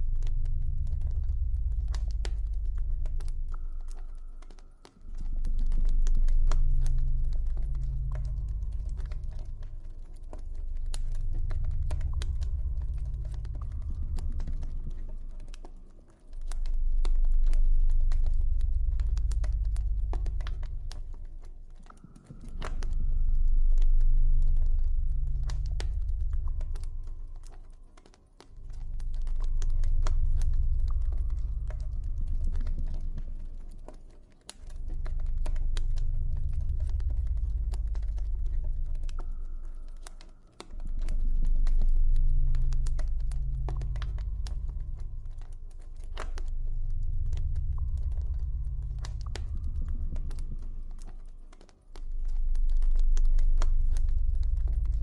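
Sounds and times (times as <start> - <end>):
deep low drone: 0.0 - 55.0
campfire crackling and popping: 25.4 - 55.0.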